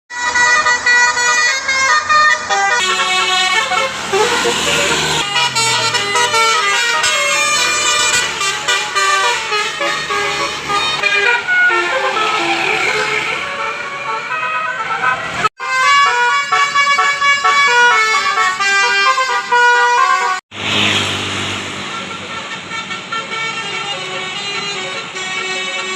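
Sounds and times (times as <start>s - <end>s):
musical air horn playing tune: 0.1s - 20.4s.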